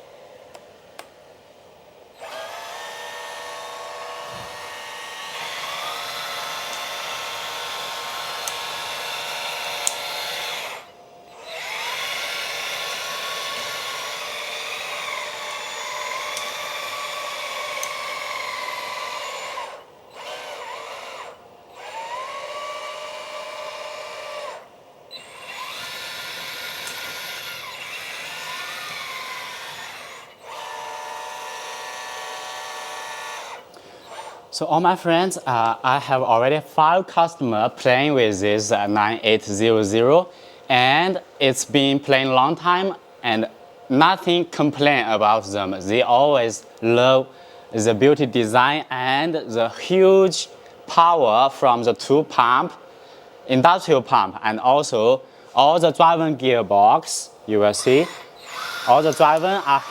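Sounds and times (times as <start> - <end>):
hydraulic pumps whining: 2.0 - 59.9.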